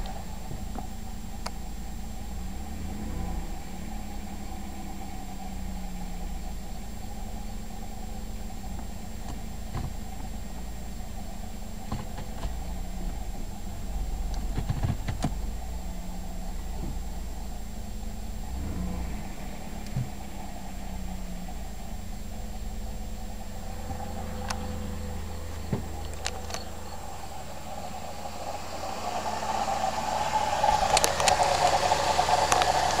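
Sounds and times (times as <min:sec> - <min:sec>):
car engine idling with rattle: 0:00.0 - 0:33.0
sharp clicks: 0:30.8 - 0:33.0.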